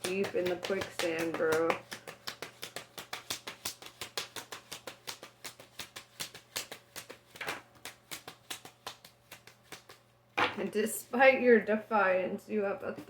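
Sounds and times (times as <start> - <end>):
cards brushing swishes: 0.0 - 10.1
playing cards shuffling: 0.0 - 10.7.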